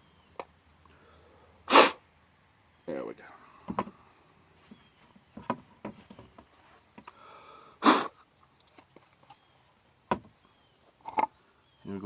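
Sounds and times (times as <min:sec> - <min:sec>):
puff of breath: 0:07.2 - 0:08.2.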